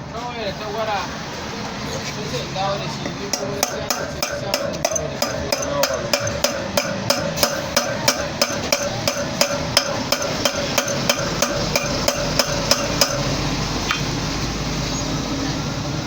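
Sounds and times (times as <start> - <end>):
hammer striking metal: 3.0 - 13.6.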